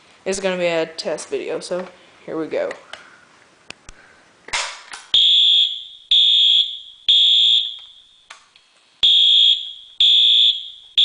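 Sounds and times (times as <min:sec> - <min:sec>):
fire alarm horn blasts: 0:05.2 - 0:08.1, 0:09.0 - 0:11.0.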